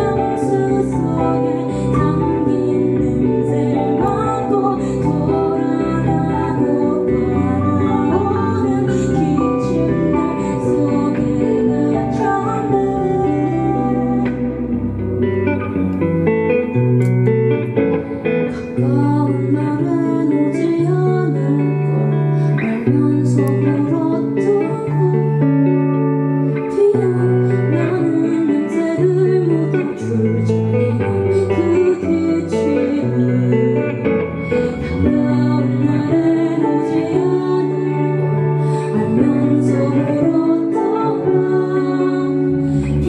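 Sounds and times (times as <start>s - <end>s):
guitar: 0.0s - 43.0s
indie band playing live: 0.0s - 43.0s.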